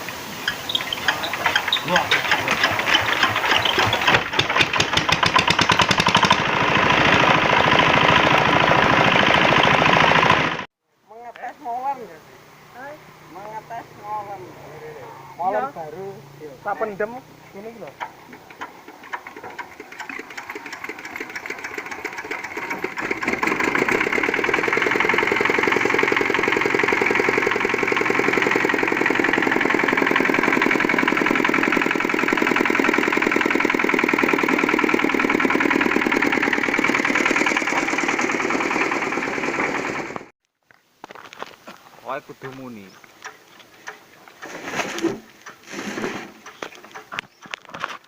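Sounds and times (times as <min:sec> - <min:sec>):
small diesel engine running: 0:00.1 - 0:10.7, 0:15.5 - 0:40.3.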